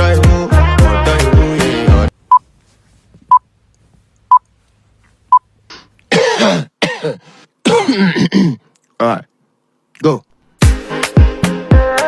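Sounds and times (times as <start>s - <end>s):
person coughing loudly: 6.1s - 8.7s.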